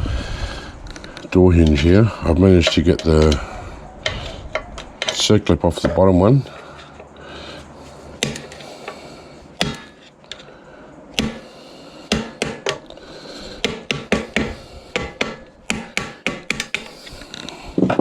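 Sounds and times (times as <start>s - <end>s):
pliers clicking on metal hinge: 1.2s - 6.0s, 8.2s - 9.0s.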